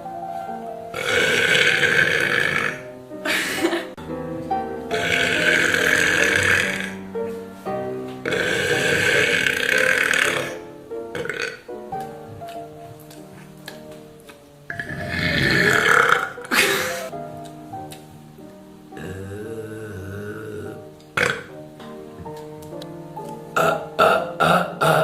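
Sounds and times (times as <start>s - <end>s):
background music: 0.0s - 25.0s
girl burping: 19.0s - 21.5s.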